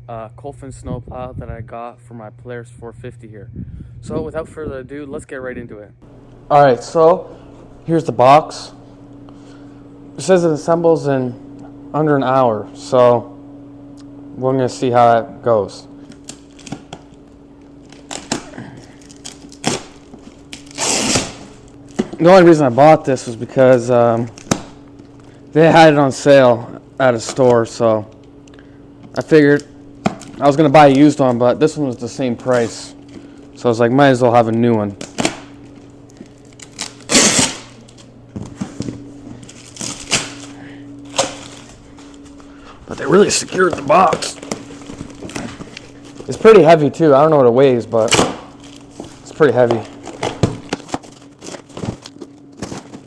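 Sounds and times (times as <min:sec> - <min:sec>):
steady low hum: 0:00.0 - 0:53.0
cardboard tearing rustle: 0:17.9 - 0:22.9, 0:36.2 - 0:38.0, 0:39.4 - 0:42.2, 0:48.0 - 0:53.0.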